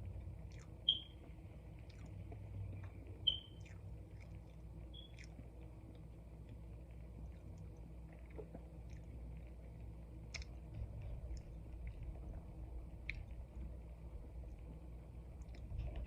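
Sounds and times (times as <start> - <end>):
close chewing: 0.0 - 14.7, 15.3 - 16.0
wet mouth clicks: 1.8 - 5.4, 10.3 - 10.6.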